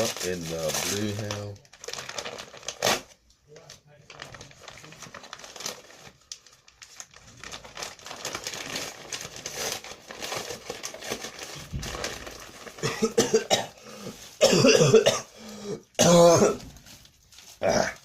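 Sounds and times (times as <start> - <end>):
packaging crinkling and rustling: 0.0 - 13.2, 14.0 - 14.6, 16.4 - 18.0
short coughs or voice: 14.4 - 15.3, 16.0 - 16.7.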